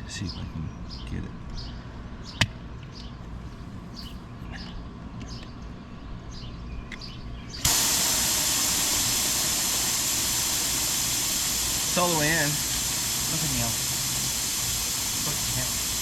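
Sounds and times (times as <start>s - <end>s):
loud steady hiss: 7.6s - 16.0s.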